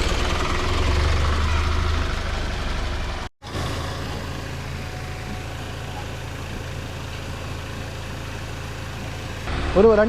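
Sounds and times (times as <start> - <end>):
vehicle engine idling: 0.0 - 10.0.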